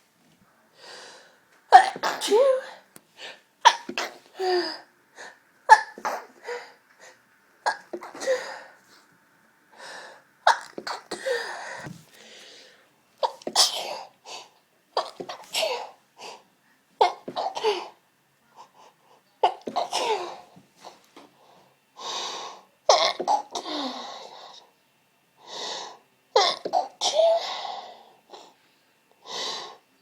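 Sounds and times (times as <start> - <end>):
person sneezing: 13.3 - 16.4, 19.5 - 20.5.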